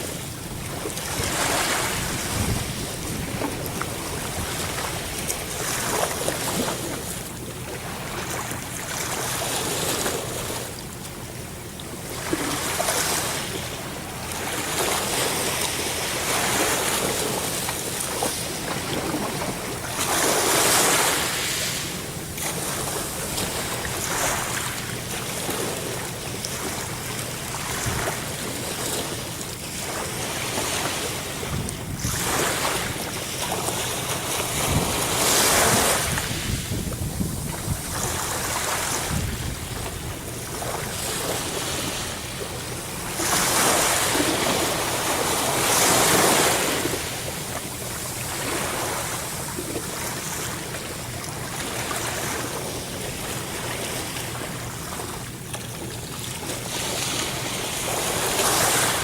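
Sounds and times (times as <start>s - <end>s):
ocean waves breaking on shore: 0.0s - 59.0s
wind buffeting microphone: 0.4s - 5.3s, 31.4s - 33.1s, 34.5s - 41.0s.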